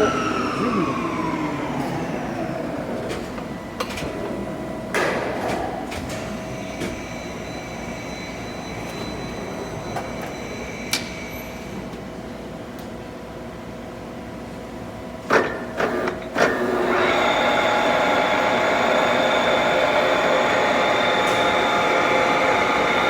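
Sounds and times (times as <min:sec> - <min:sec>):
lathe running with whining tones: 0:00.0 - 0:03.7, 0:15.9 - 0:23.0.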